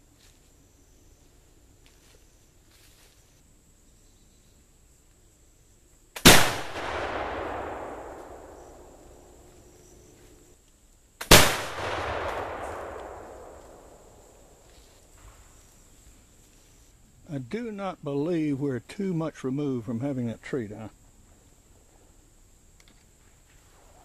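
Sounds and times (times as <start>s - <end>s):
flintlock rifle shots: 6.2s - 9.8s, 11.2s - 14.7s.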